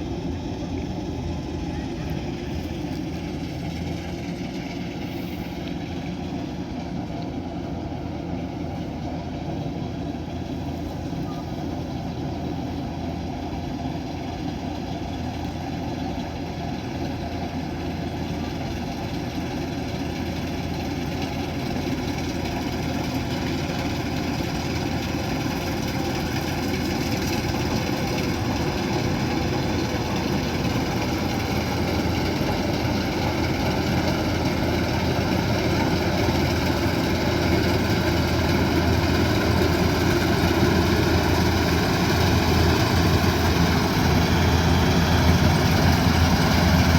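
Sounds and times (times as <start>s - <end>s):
combine harvester diesel engine: 0.0s - 46.9s.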